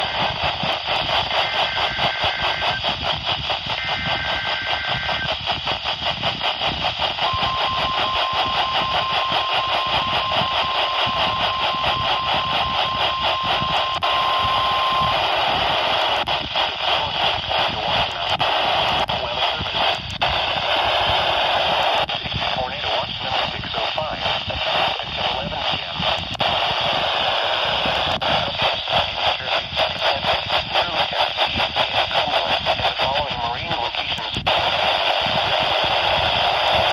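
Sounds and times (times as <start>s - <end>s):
steady warning alarm tone: 0.0s - 22.1s
heavy radio static: 0.0s - 36.9s
screeching digital data burst: 1.3s - 2.9s, 3.7s - 5.4s.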